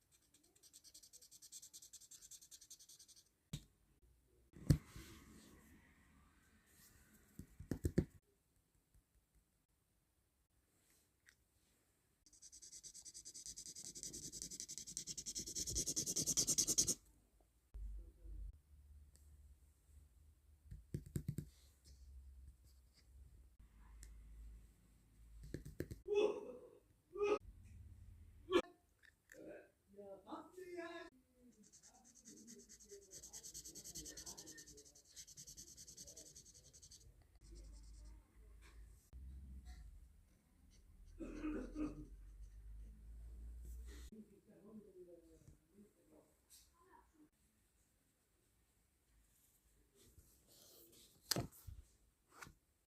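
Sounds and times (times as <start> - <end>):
scratching strokes on a surface: 12.3 - 17.0, 31.6 - 38.2.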